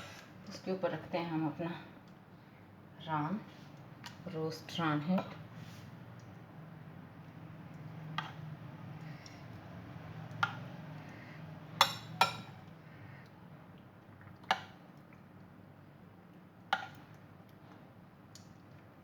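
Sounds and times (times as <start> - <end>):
utensil clinking against a dish: 11.8 - 12.7.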